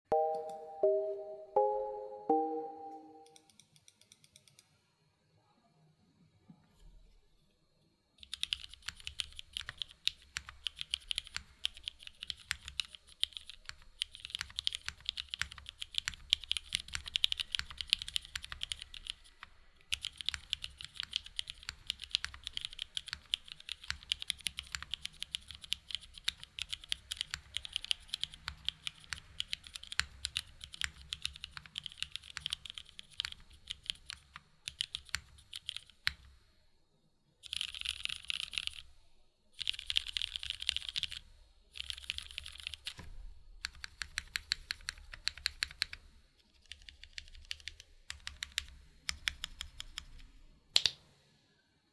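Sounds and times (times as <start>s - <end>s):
mechanical keyboard typing: 8.2s - 36.3s, 37.4s - 38.8s, 39.6s - 41.2s, 41.8s - 43.0s, 43.6s - 50.2s.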